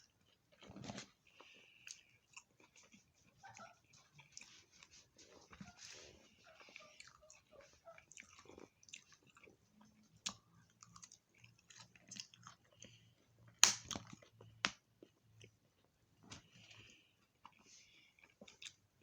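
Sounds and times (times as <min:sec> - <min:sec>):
chewing and mouth clicks: 0:00.0 - 0:19.0
sharp food crunches: 0:13.6 - 0:14.3.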